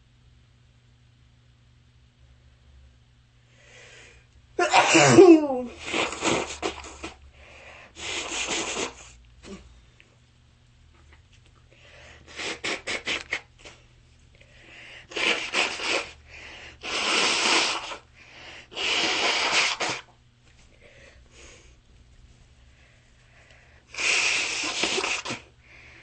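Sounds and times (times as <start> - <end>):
person sneezing: 4.6 - 7.2, 12.3 - 13.8
person sniffling: 11.8 - 20.1.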